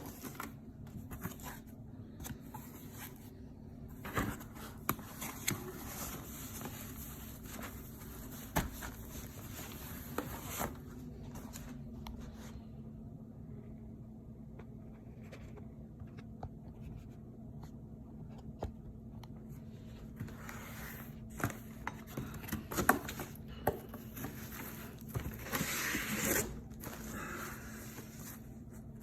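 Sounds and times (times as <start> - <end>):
faint low hum: 0.0 - 29.0
packaging scraping and rustling: 24.0 - 29.0.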